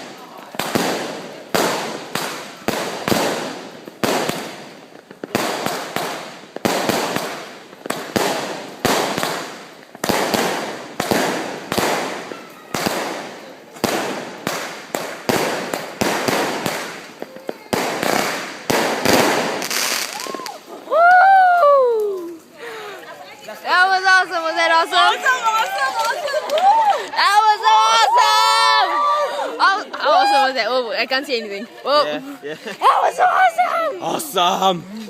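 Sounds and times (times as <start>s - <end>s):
fireworks bangs: 0.0s - 21.2s.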